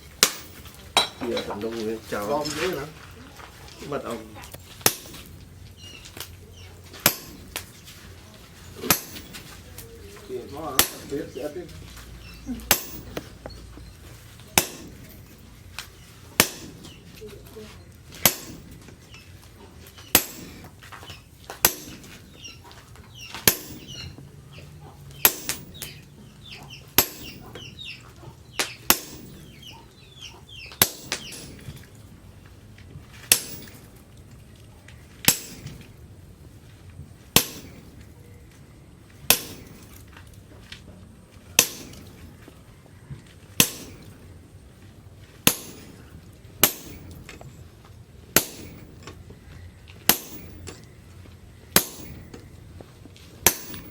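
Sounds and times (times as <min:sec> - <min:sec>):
birds chirping: 0:00.0 - 0:53.9
hammer striking steel on anvil: 0:00.2 - 0:01.6, 0:04.8 - 0:05.4, 0:07.0 - 0:07.7, 0:08.8 - 0:09.6, 0:10.7 - 0:11.5, 0:12.6 - 0:13.6, 0:14.6 - 0:15.4, 0:16.4 - 0:17.0, 0:18.1 - 0:18.9, 0:20.0 - 0:20.8, 0:21.6 - 0:22.8, 0:23.4 - 0:24.2, 0:24.8 - 0:28.0, 0:28.6 - 0:29.8, 0:30.7 - 0:31.8, 0:33.2 - 0:33.9, 0:35.2 - 0:35.9, 0:37.3 - 0:38.0, 0:39.2 - 0:40.0, 0:41.6 - 0:42.2, 0:43.6 - 0:44.2, 0:45.4 - 0:47.4, 0:48.4 - 0:49.2, 0:50.0 - 0:50.9, 0:51.7 - 0:52.5, 0:53.4 - 0:53.9.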